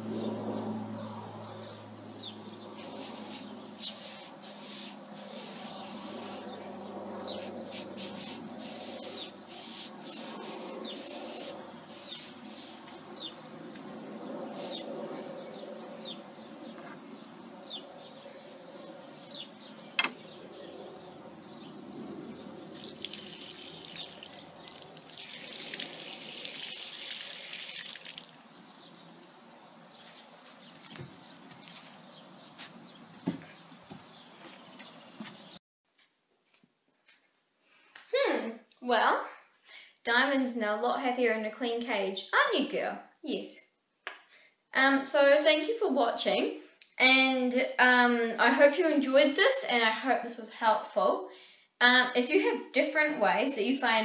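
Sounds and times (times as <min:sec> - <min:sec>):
small birds chirping: 0:01.0 - 0:26.5, 0:27.1 - 0:35.6
running water splashing: 0:22.8 - 0:28.8.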